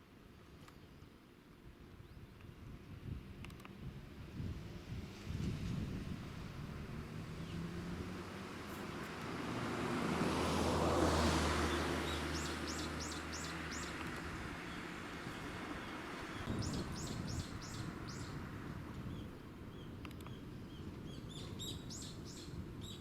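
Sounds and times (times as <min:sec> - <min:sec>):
vehicle passing: 0:04.5 - 0:19.8
bird chirping: 0:11.7 - 0:18.4, 0:19.0 - 0:23.0.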